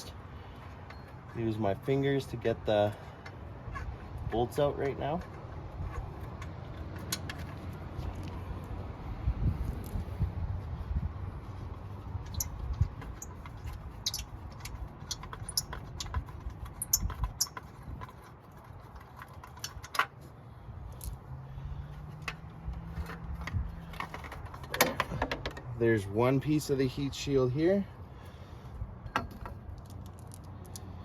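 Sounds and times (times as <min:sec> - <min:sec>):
metallic clicks of small bolts: 0:29.1 - 0:31.0.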